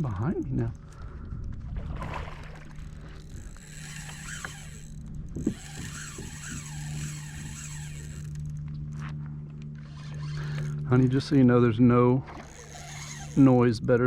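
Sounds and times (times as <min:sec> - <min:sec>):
steady low hum: 0:00.0 - 0:14.0
fishing reel drag buzzing and clicking: 0:02.6 - 0:11.4, 0:12.2 - 0:14.0.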